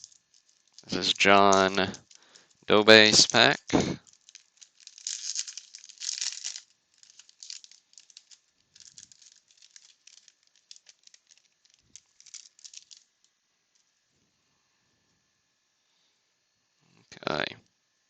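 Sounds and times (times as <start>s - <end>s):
wax paper wrapper tearing and crinkling: 0.0s - 13.1s.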